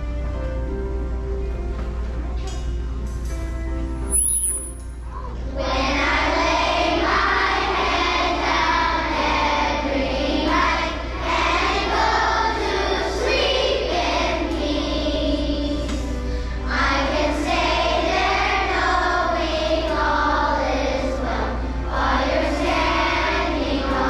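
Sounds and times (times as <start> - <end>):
children's choir singing: 5.4 - 24.0.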